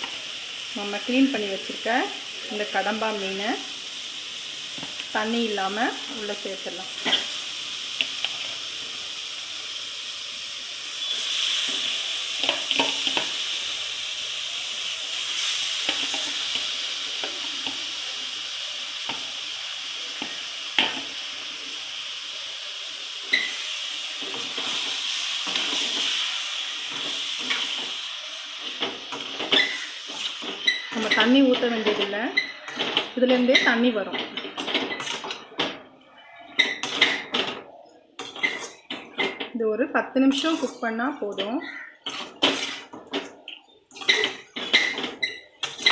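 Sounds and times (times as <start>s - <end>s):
squid sizzling in a pan: 0.0s - 34.0s, 43.9s - 45.9s.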